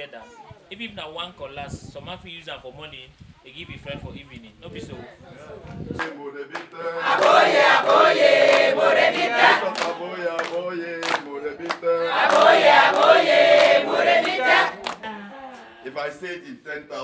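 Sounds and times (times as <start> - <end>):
group singing in chorus: 6.0 - 15.8.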